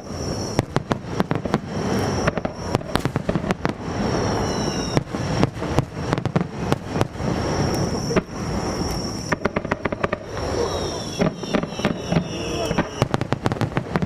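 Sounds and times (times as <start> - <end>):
fireworks bangs and crackling: 0.0 - 14.0
fireworks whistling: 0.0 - 14.0.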